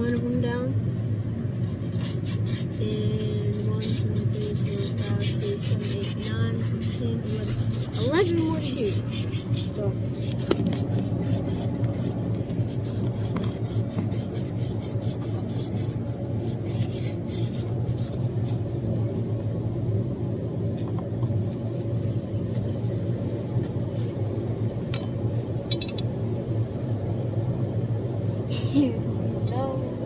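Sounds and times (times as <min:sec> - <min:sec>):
steady low hum: 0:00.0 - 0:30.0
rubbing and scraping metal: 0:01.6 - 0:18.8.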